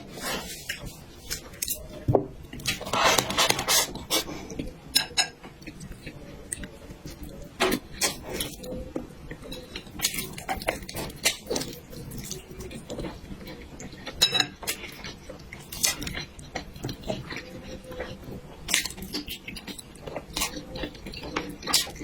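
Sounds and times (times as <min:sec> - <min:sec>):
person eating noisily: 0:00.0 - 0:22.0
utensils clinking on dishes: 0:05.0 - 0:05.4, 0:14.1 - 0:14.7.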